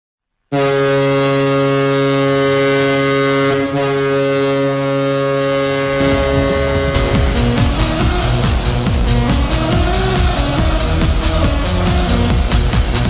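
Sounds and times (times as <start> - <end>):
ice hockey goal horn blast: 0.5 - 8.7.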